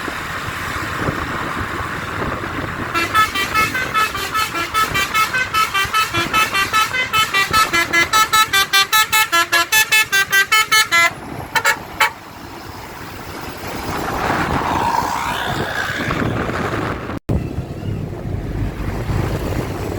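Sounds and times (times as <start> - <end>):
short horn blasts: 2.9 - 12.2
musical bus horn melody: 2.9 - 12.3
rush of noise: 11.2 - 19.9.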